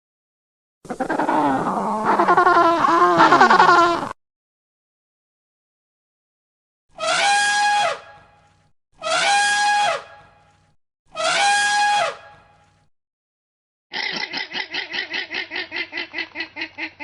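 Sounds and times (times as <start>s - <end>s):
animal crying out: 0.9s - 4.2s.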